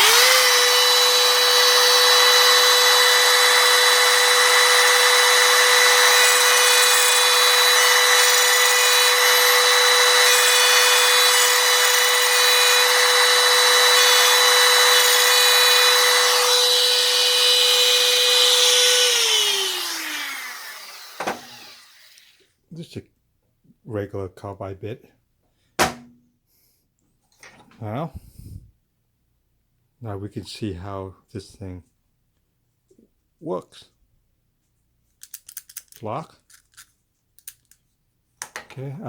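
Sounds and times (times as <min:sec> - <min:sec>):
router bit cutting metal: 0:00.0 - 0:22.4
router whining: 0:00.0 - 0:22.5.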